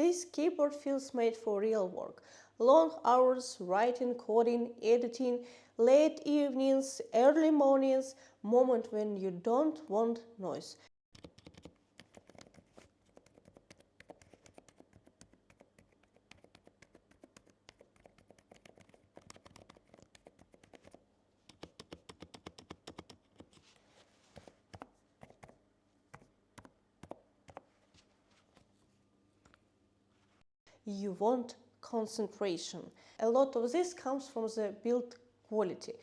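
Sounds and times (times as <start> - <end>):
soft keyboard keystrokes: 11.2 - 23.6.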